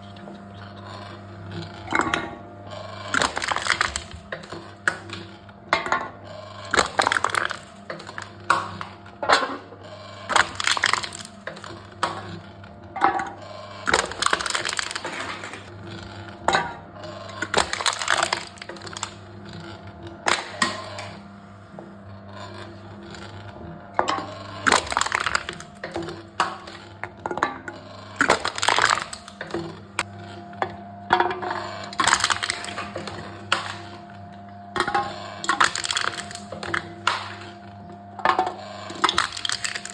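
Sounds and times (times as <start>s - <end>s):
cans being crushed: 3.1s - 5.1s, 6.7s - 8.8s, 10.3s - 11.9s, 13.8s - 15.7s, 17.4s - 19.2s, 24.6s - 26.2s, 28.2s - 29.7s, 31.9s - 33.8s, 35.4s - 37.5s, 38.9s - 39.9s.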